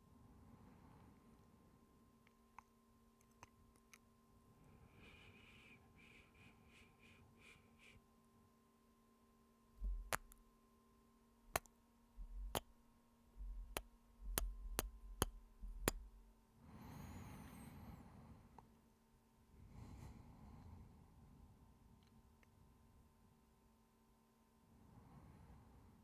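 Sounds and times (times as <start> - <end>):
lip smacking kisses: 10.0 - 10.4.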